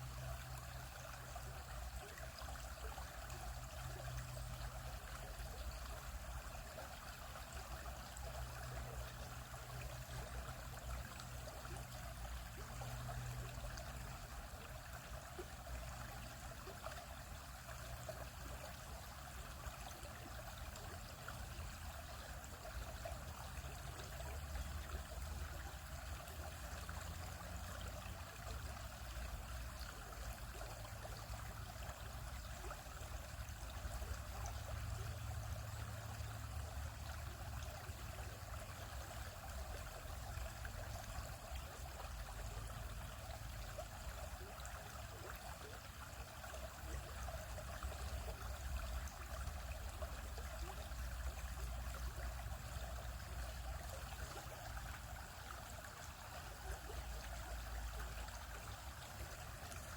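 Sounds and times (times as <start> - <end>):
stream flowing over rocks: 0.0 - 59.9.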